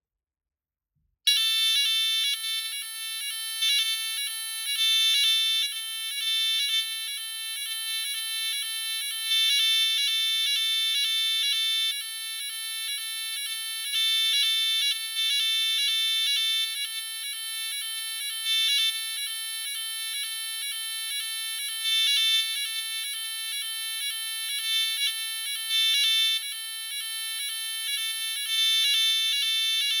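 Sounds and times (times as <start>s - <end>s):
fire alarm sounder tone: 1.3s - 30.0s.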